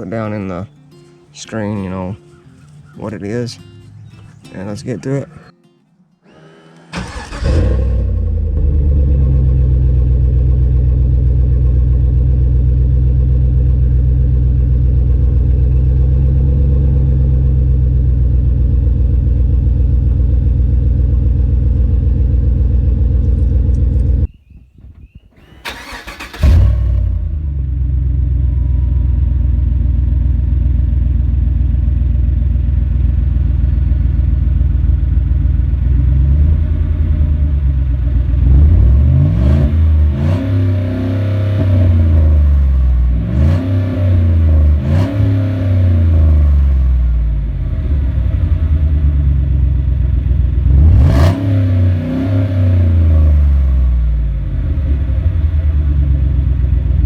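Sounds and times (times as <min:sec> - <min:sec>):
vee eight engine idling: 0:00.0 - 0:05.5, 0:06.8 - 0:24.3, 0:25.4 - 0:57.0
engine starting: 0:06.2 - 0:08.6, 0:25.0 - 0:27.2.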